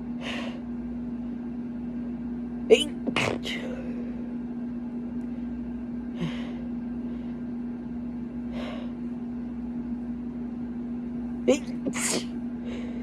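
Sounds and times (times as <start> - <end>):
air-conditioning unit humming: 0.0 - 13.0
sharp pre-sneeze gasps: 11.9 - 12.3.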